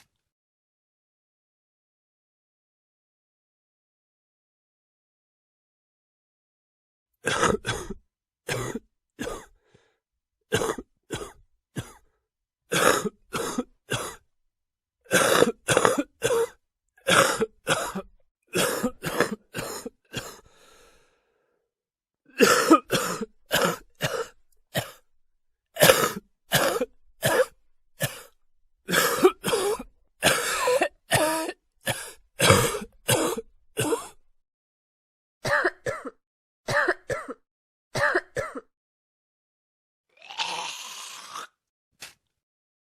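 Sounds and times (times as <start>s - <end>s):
person coughing: 7.2s - 9.5s, 10.5s - 12.0s, 12.7s - 14.2s, 15.1s - 20.4s, 22.3s - 25.0s, 25.8s - 34.2s, 35.4s - 37.4s, 38.0s - 38.7s.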